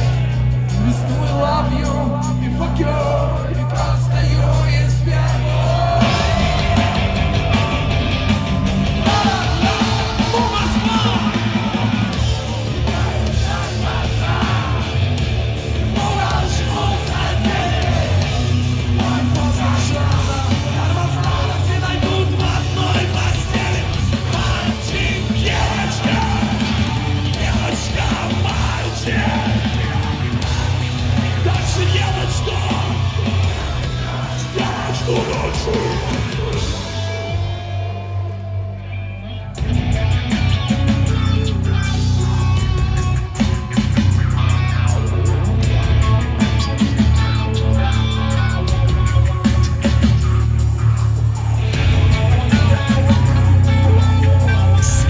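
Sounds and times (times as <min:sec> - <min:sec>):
heavy rock band playing: 0:00.0 - 0:55.0
person yelling or singing: 0:00.8 - 0:15.0, 0:15.8 - 0:37.2.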